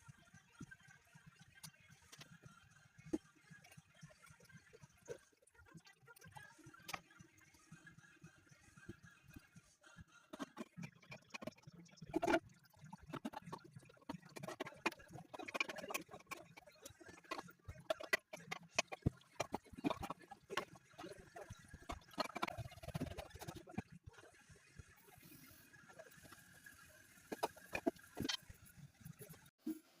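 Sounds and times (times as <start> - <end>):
clicking and knocking of toilet parts: 13.0 - 20.8.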